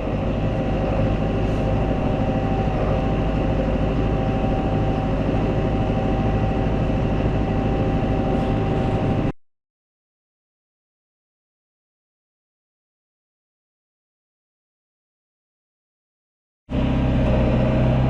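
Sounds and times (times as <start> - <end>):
thin steady whine: 0.0 - 9.4
tractor engine droning: 0.0 - 9.4, 16.7 - 18.0.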